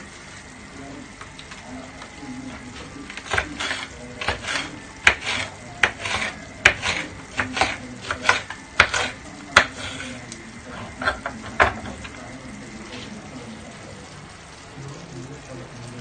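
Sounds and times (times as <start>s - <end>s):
utensil scraping a cooking dish: 2.5s - 13.2s.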